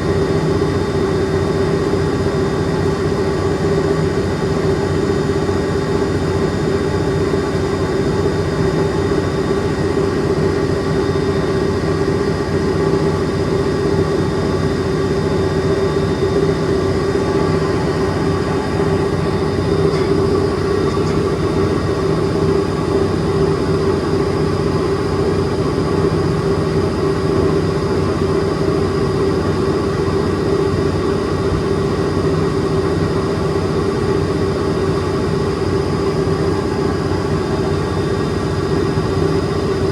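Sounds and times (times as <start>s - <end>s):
washing machine motor hum: 9.5s - 28.8s.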